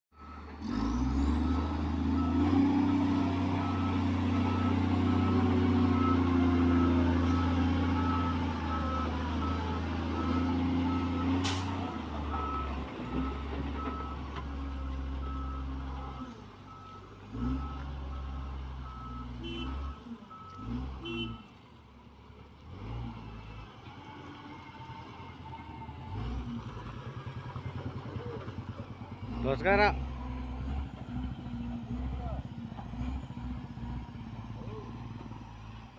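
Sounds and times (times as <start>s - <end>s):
diesel machine engine running: 24.3s - 35.9s.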